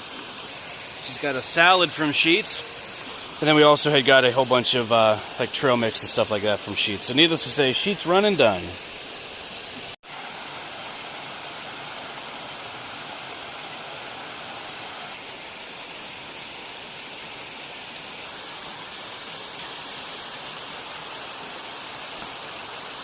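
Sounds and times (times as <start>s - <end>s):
small waterfall rushing: 0.0s - 23.0s.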